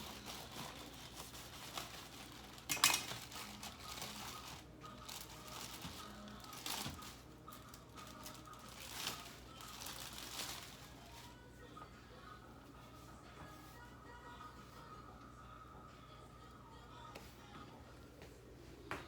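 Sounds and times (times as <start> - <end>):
dishes and utensils clinking: 0.0 - 4.6.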